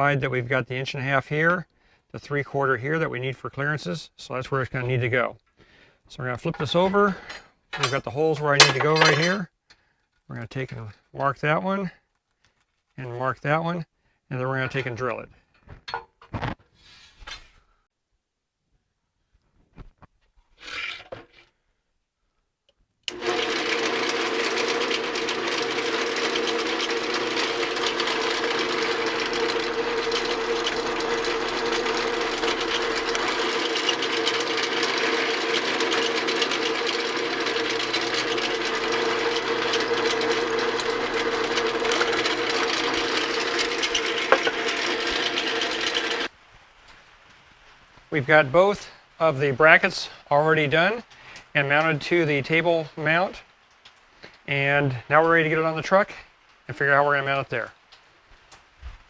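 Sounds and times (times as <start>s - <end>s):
electric drill drilling: 23.1s - 46.3s.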